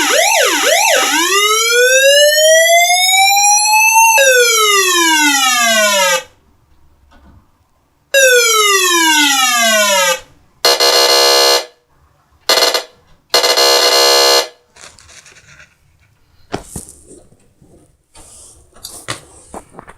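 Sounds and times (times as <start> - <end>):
buzzing horn tone: 10.7 - 11.7, 12.5 - 14.6.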